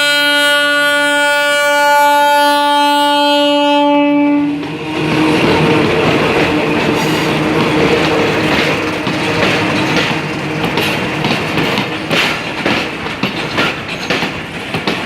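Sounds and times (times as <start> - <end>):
train horn blast: 0.0 - 8.1
train wheels clacking on rails: 4.6 - 15.0.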